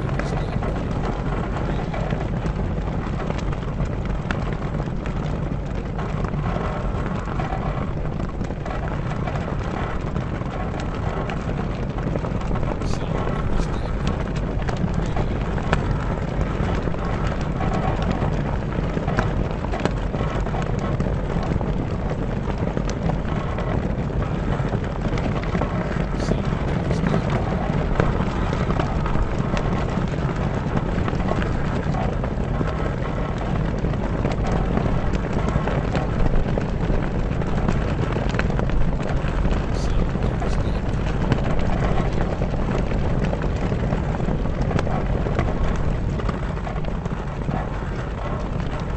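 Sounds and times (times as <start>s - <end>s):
sail cloth flapping in wind: 0.0s - 48.9s.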